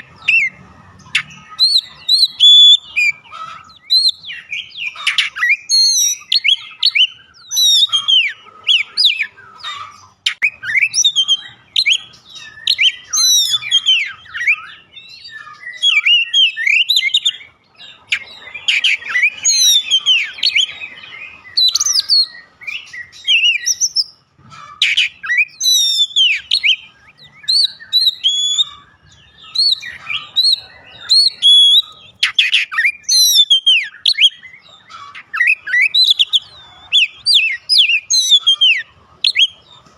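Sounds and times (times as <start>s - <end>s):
songbird whistling: 0.0s - 24.2s, 24.8s - 39.7s.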